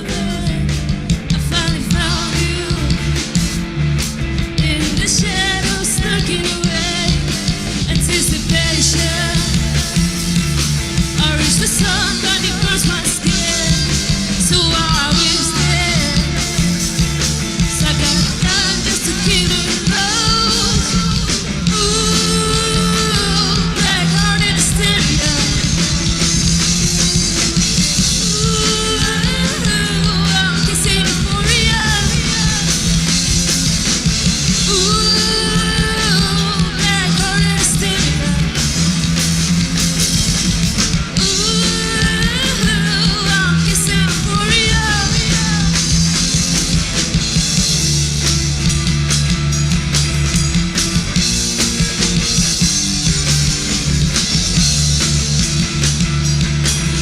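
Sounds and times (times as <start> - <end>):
lead vocalist singing: 0.0 - 3.5, 4.5 - 38.9, 41.0 - 46.9
rock band playing: 0.0 - 57.0.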